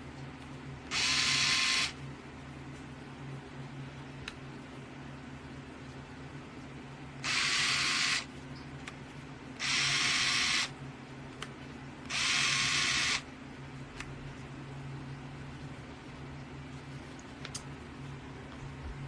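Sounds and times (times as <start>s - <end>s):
cordless screwdriver motor whirring: 0.9s - 2.0s, 7.2s - 8.3s, 9.6s - 10.7s, 12.1s - 13.2s.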